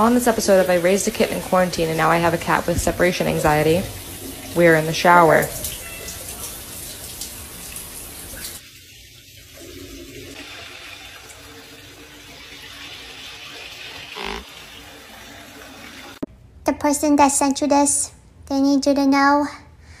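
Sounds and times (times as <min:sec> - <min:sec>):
shower water running: 0:00.0 - 0:16.3.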